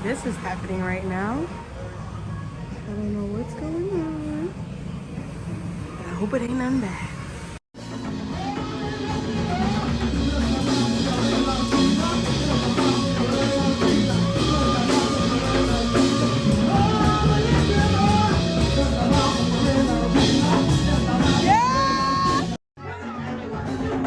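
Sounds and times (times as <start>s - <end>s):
drums: 7.7s - 24.0s
guitar: 7.8s - 24.0s
person singing: 7.8s - 24.0s
rock music: 7.8s - 24.0s.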